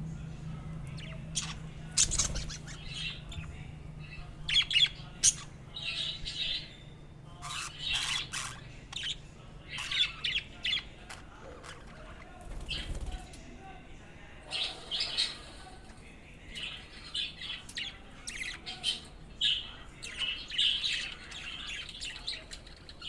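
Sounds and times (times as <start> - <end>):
low steady hum: 0.0 - 23.0
budgies chirping and squawking: 0.8 - 13.4, 14.5 - 23.0.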